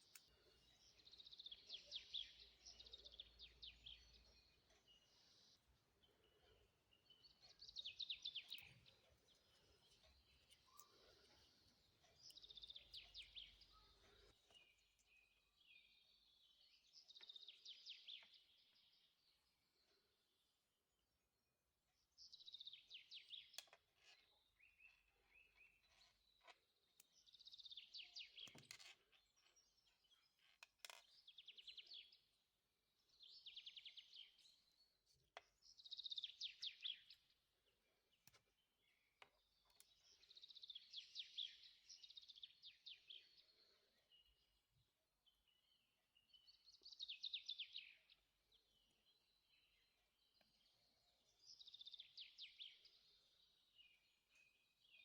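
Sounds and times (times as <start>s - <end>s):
songbird trills: 0.0s - 20.2s, 22.0s - 32.4s, 33.0s - 55.0s.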